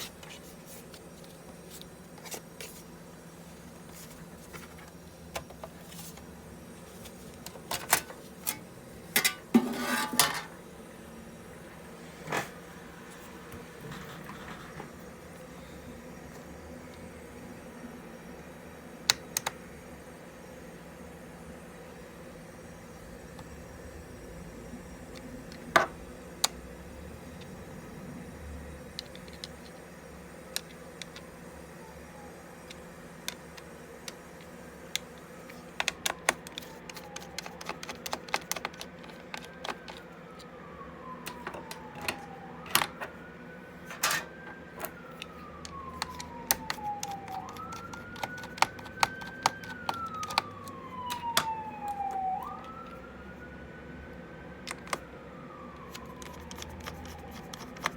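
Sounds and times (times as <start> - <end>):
siren: 14.4 - 57.9
plastic and metal clicks on laptop: 35.8 - 40.0, 45.2 - 51.5.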